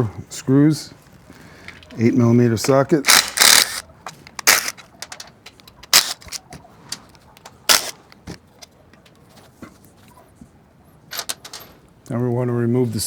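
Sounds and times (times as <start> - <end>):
socket wrench clicking: 3.1 - 7.9
small metal ticks: 4.1 - 7.9.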